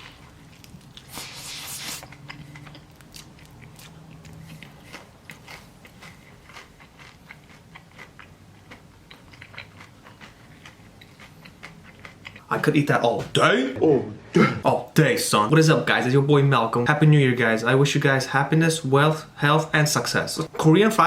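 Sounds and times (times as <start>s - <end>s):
crackles of chewing: 0.0s - 12.5s
fried chicken crunching: 0.0s - 12.5s.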